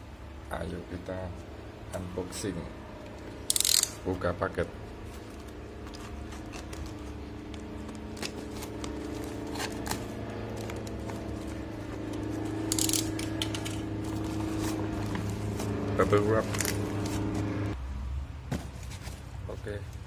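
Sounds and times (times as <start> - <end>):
low hum: 0.0 - 18.1
packaging clicks and scrapes: 5.1 - 17.4
packaging tearing: 5.2 - 17.2.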